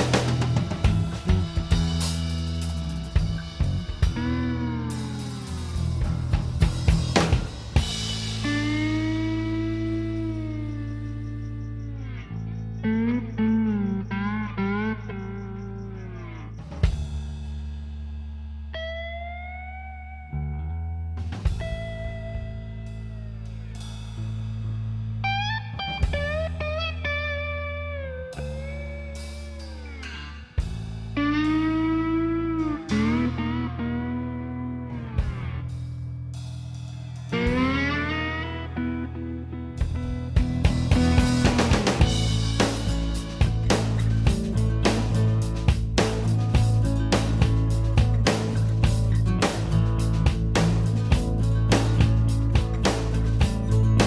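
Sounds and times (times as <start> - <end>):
drum kit fill: 0.0 - 10.1, 16.7 - 18.6, 21.3 - 24.7, 28.4 - 31.8, 39.8 - 54.0
held bending guitar notes: 0.0 - 16.9, 18.7 - 24.0, 25.0 - 36.3, 37.3 - 54.0
steady bass: 0.0 - 54.0
sharp drum hit: 40.4 - 53.7.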